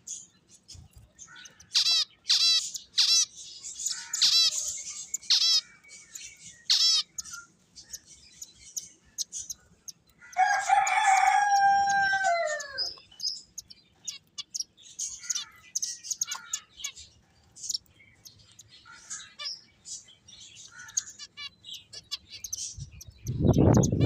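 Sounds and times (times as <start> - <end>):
finches chirping: 0.0 - 24.0
rooster crowing: 10.4 - 13.0.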